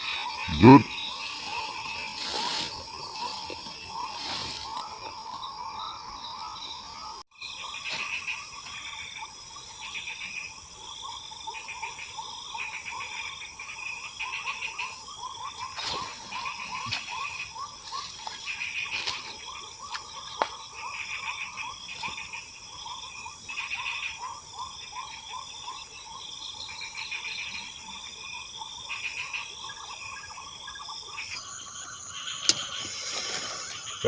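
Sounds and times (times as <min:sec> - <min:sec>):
pulsing calls: 0:00.0 - 0:07.2, 0:31.3 - 0:34.0
insects droning: 0:00.0 - 0:34.0.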